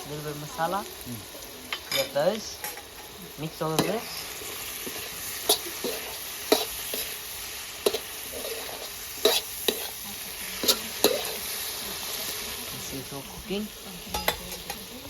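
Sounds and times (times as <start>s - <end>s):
food frying sizzle: 0.0s - 15.0s
spoon scraping and knocking pot: 7.8s - 9.9s, 14.1s - 14.8s.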